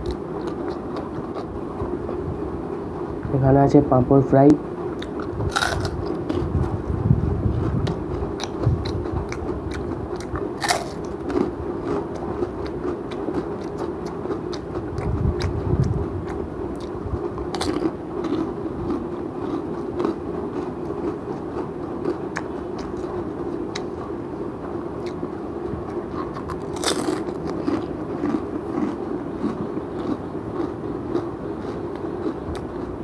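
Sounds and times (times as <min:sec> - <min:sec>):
crisp chewing crunches: 0:00.0 - 0:01.6, 0:05.0 - 0:06.5, 0:07.5 - 0:24.1, 0:25.0 - 0:33.0.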